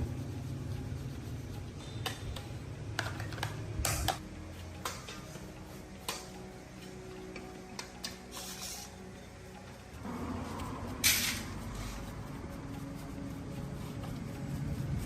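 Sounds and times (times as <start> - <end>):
tools clicking and tapping: 1.8 - 8.4.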